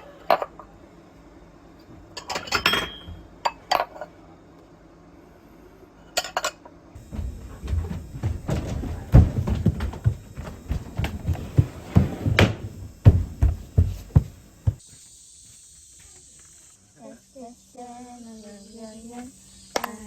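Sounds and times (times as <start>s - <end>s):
knocks and thuds of handling: 7.0s - 14.8s.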